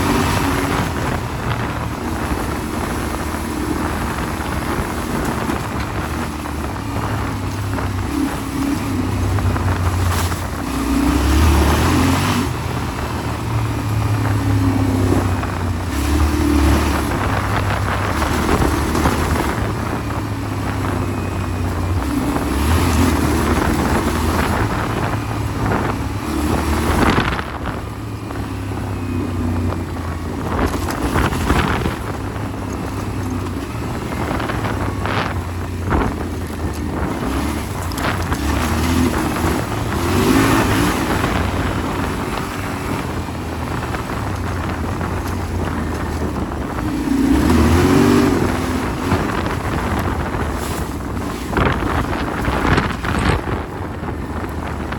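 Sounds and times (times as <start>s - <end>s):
motorcycle engine revving: 0.0s - 54.9s
wind buffeting microphone: 0.0s - 54.9s.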